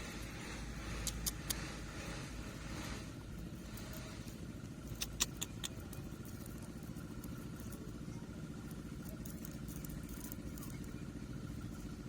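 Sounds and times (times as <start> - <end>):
small engine running: 0.0 - 12.0
sharp clicks: 0.9 - 1.7, 4.9 - 6.1.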